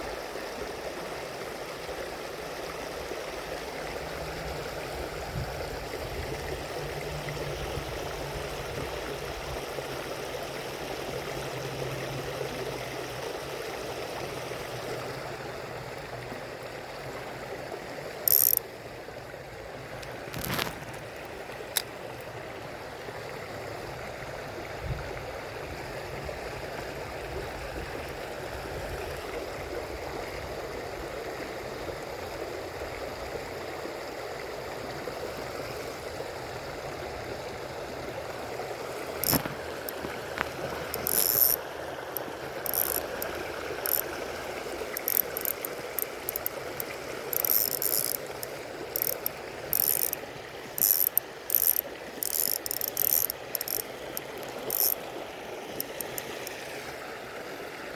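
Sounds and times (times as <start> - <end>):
shallow stream running: 0.0 - 57.9
sharp clicks: 18.3 - 18.6, 39.2 - 41.6, 42.7 - 44.1, 45.0 - 50.2, 50.8 - 55.1, 55.8 - 56.6.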